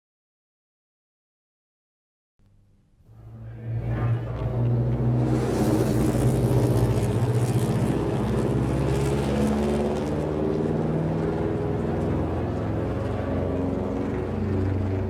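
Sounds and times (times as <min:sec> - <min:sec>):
vehicle driving past: 0:03.1 - 0:15.0.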